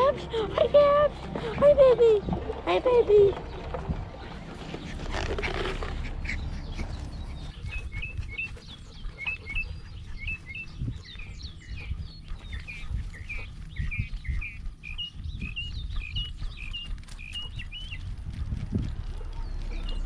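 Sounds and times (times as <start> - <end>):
small birds chirping: 0.0 - 20.0
camera rubbing rumble and knocks: 2.2 - 7.6.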